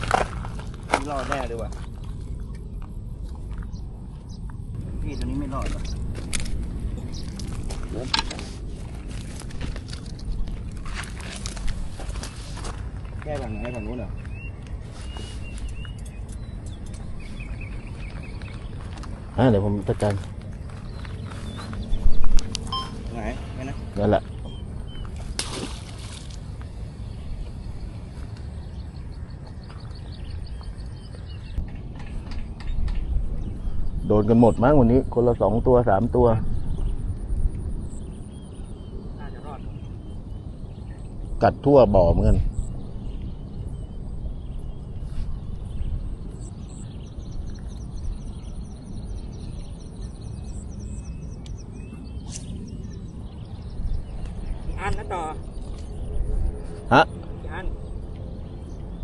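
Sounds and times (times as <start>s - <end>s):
wind buffeting microphone: 0.0s - 59.0s
high chirps: 22.6s - 23.8s.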